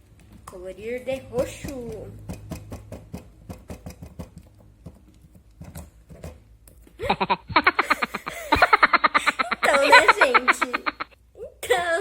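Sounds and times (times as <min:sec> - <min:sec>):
woman laughing: 0:07.0 - 0:12.0.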